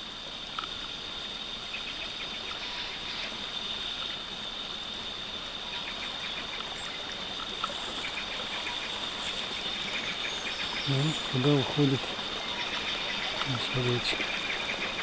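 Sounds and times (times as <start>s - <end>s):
river water rushing: 7.5s - 15.0s.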